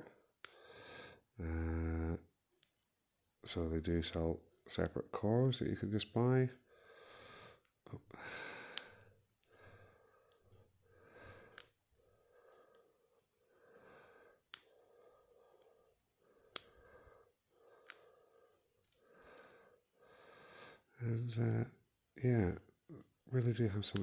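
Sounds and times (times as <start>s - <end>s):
slow breathing: 0.0s - 1.3s, 6.6s - 21.0s.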